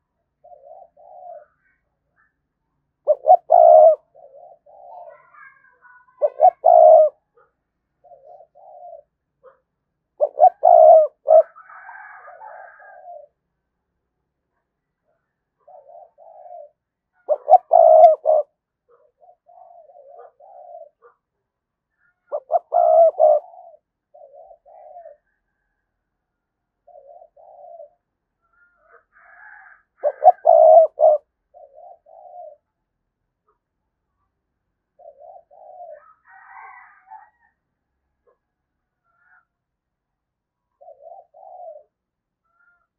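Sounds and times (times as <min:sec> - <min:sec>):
dove cooing: 0:00.0 - 0:02.4, 0:03.0 - 0:13.4, 0:15.6 - 0:21.2, 0:21.9 - 0:25.9, 0:26.8 - 0:32.8, 0:34.9 - 0:37.6, 0:40.7 - 0:42.9.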